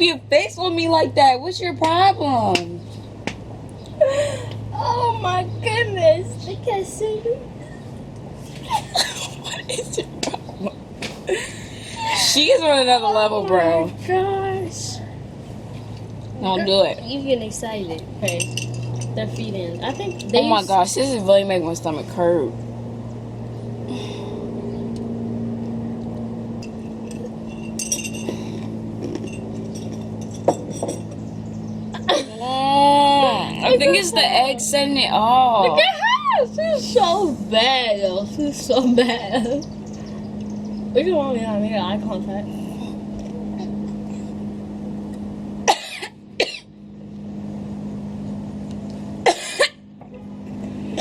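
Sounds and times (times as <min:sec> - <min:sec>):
steady low hum: 0:00.0 - 0:51.0
light clinks and clicks: 0:18.2 - 0:20.5, 0:25.6 - 0:31.3
person coughing: 0:45.7 - 0:46.6, 0:49.3 - 0:49.8.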